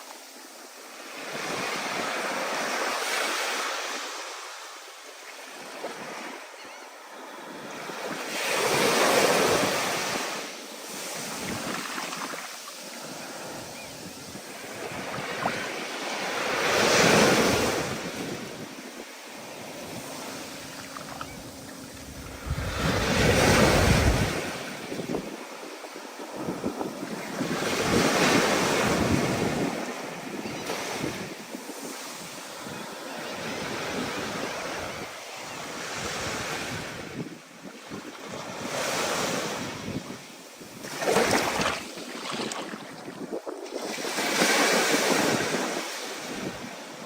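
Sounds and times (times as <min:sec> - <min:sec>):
waves breaking: 0:07.3 - 0:34.5, 0:40.8 - 0:46.2
wind buffeting microphone: 0:16.7 - 0:31.6.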